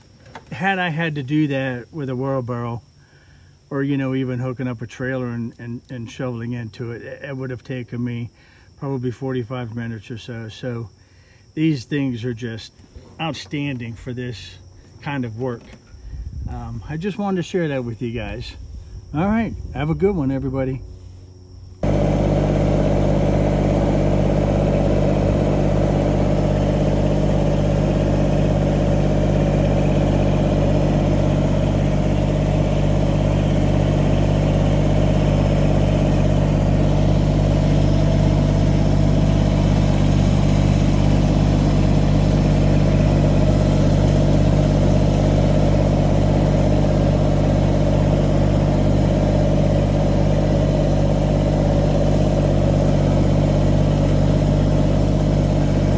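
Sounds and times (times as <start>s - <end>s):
tractor diesel engine running: 0.0s - 3.0s, 15.0s - 55.9s.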